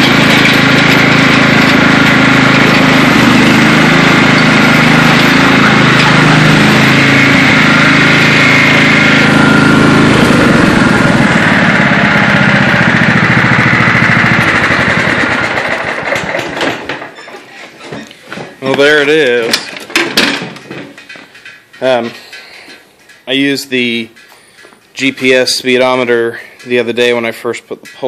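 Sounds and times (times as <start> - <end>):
riding lawn mower engine running hard: 0.0 - 17.2.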